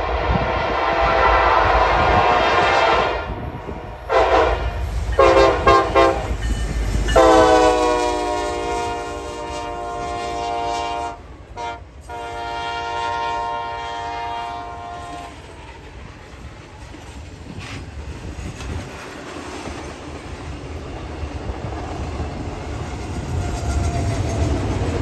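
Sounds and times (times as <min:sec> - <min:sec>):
locomotive air horn: 0:00.0 - 0:15.4
train rolling noise: 0:00.0 - 0:25.0.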